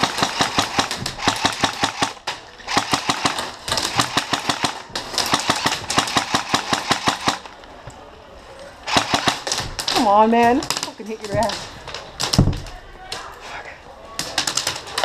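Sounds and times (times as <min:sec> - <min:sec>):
airsoft rifle firing bursts: 0:00.0 - 0:07.5, 0:08.9 - 0:10.0.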